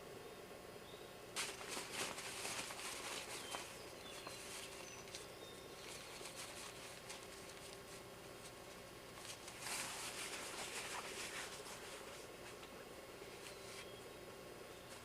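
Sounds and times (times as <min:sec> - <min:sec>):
faint bird chirps: 0:00.2 - 0:01.2, 0:03.1 - 0:07.0, 0:13.2 - 0:15.0
sleeping bag rustling and crackling: 0:01.4 - 0:12.6.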